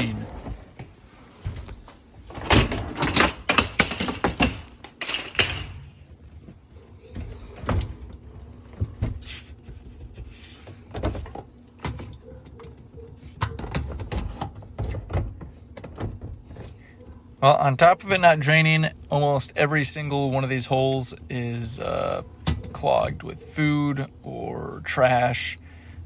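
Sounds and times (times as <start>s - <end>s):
dishwasher racks clattering: 2.2s - 6.0s.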